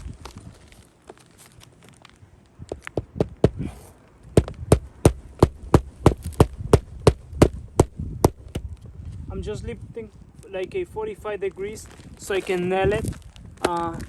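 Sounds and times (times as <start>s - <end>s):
hammer striking roofing nails: 4.4s - 8.7s.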